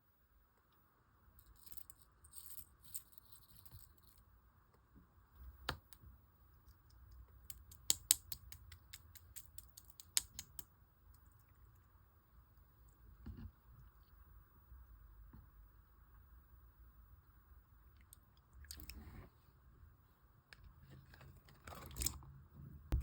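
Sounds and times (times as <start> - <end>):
sharp clicks and pops: 6.9 - 10.7.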